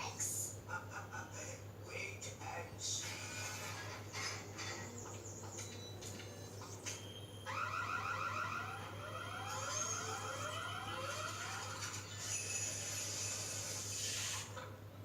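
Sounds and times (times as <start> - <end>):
steady low hum: 0.0 - 14.0
electronic alarm tone warbling: 6.9 - 12.6.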